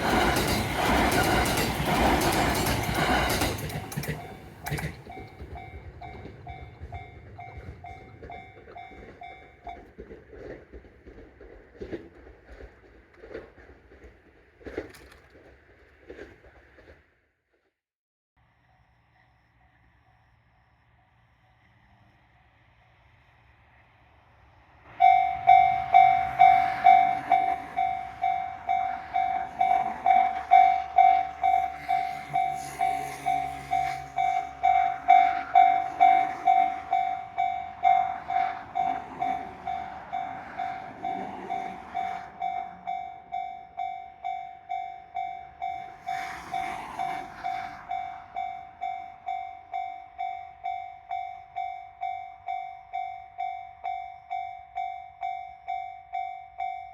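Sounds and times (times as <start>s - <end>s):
railroad crossing bell ringing: 0.0s - 10.0s, 24.9s - 56.9s
train rumbling past: 0.0s - 16.9s, 20.6s - 56.9s.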